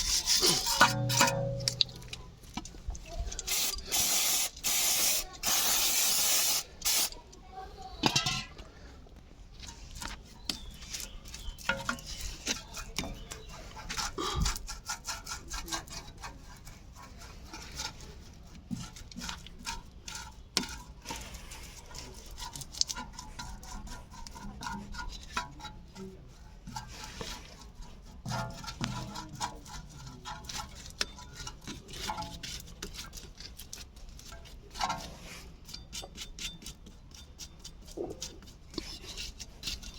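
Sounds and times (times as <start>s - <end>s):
metal parts and tools clinking: 0.2s - 7.2s.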